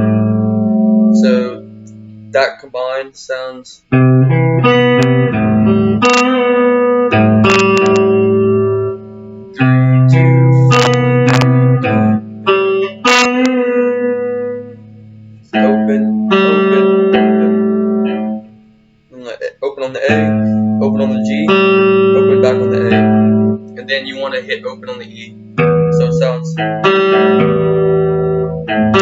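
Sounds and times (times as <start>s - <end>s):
guitar picking single-note riff: 0.0s - 2.5s, 3.9s - 18.8s, 19.9s - 29.0s.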